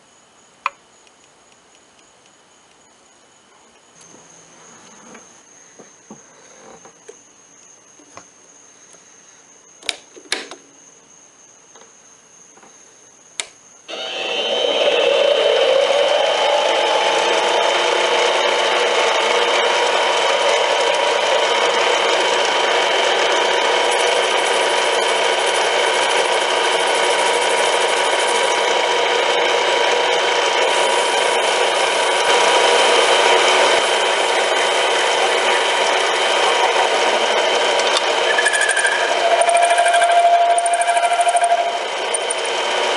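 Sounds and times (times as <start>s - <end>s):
machine tool motor whirring: 13.4s - 42.9s.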